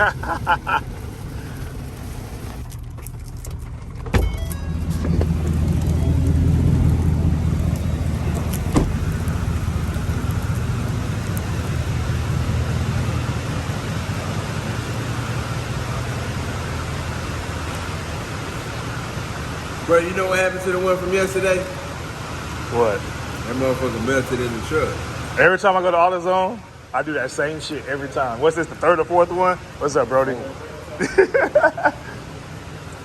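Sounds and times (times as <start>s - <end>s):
vehicle hum from inside cab: 0.0s - 25.4s.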